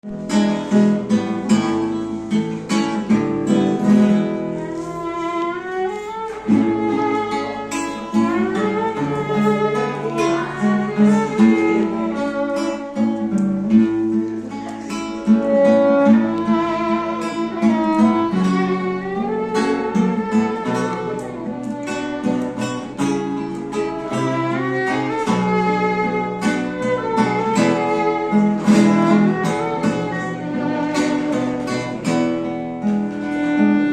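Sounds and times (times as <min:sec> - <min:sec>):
strummed strings rhythm: 0:00.0 - 0:33.9
violin melody: 0:00.0 - 0:33.9.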